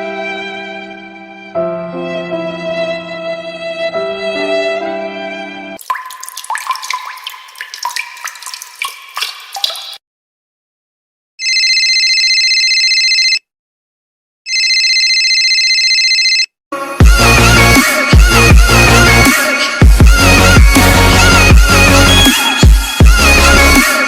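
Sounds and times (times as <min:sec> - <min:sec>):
water drops dripping: 0:05.8 - 0:10.0
telephone ringing: 0:11.4 - 0:13.4, 0:14.5 - 0:16.5.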